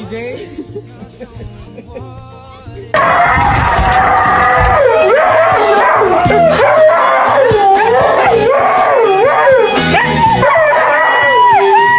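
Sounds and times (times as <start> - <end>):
dog howling: 3.0 - 11.9.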